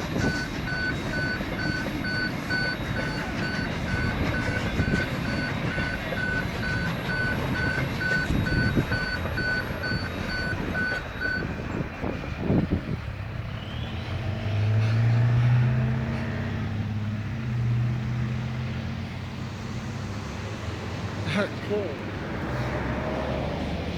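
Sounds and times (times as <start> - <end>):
level crossing bells beeping: 0.0 - 11.7
steady rumble: 0.0 - 14.2
low engine drone: 0.0 - 21.2.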